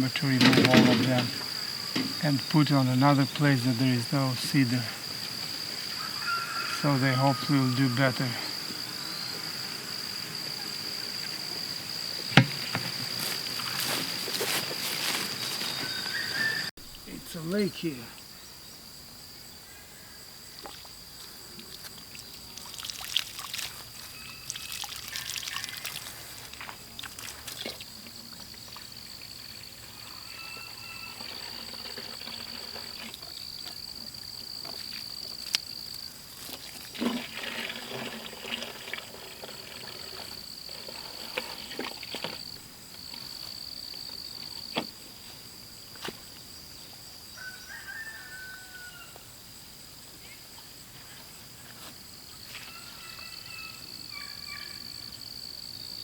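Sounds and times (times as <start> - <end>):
water sloshing and trickling: 21.6 - 34.8, 36.4 - 42.6.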